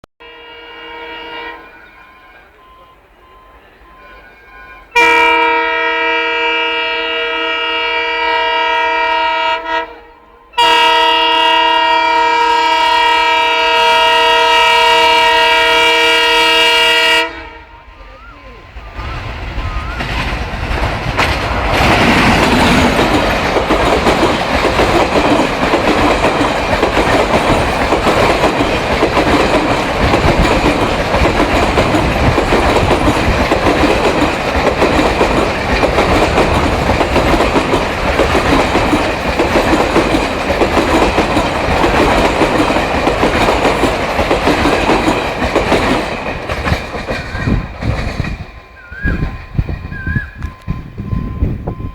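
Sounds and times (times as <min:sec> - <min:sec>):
diesel train passing: 0:00.2 - 0:51.9
wheels clattering over rail joints: 0:19.0 - 0:50.2.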